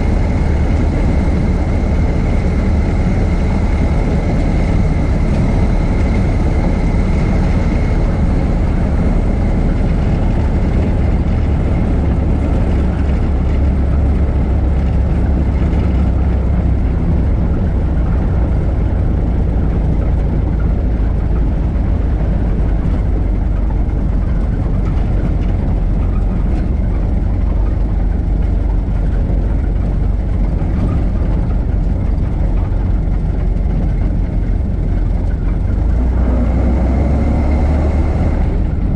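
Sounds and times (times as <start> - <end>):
old car engine rumbling: 0.0 - 38.9.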